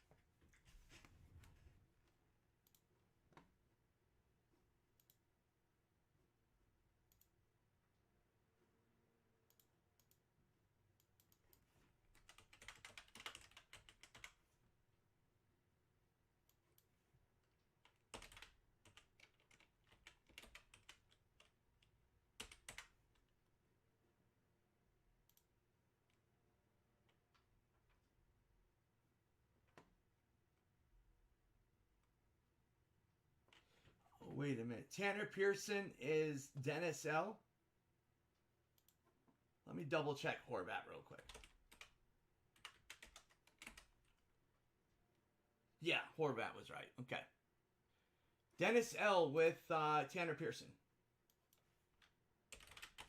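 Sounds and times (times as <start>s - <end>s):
faint keyboard typing: 11.0s - 14.6s, 16.4s - 23.4s, 41.1s - 44.3s, 51.3s - 53.0s.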